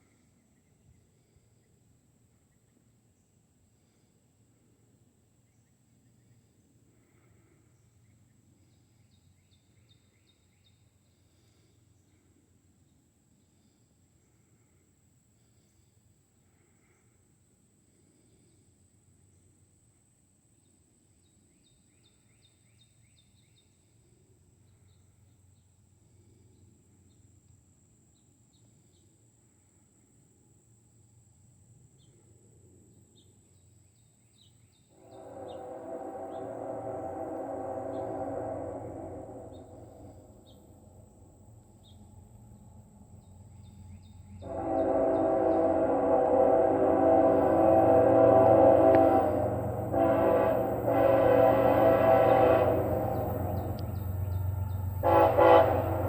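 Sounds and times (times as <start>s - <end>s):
locomotive horn blast: 35.0s - 40.4s, 44.3s - 56.0s
low rumble: 47.2s - 56.0s.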